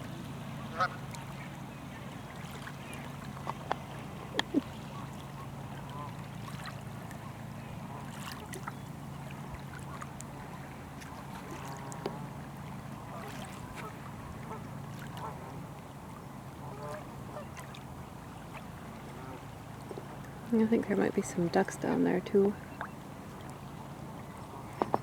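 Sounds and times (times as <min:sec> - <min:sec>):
geese honking: 0:00.6 - 0:01.2.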